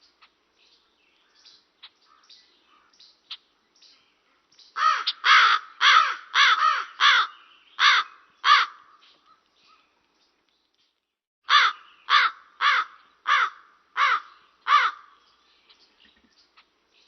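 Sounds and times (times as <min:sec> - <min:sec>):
raven cawing: 0:04.8 - 0:09.4, 0:11.5 - 0:15.2.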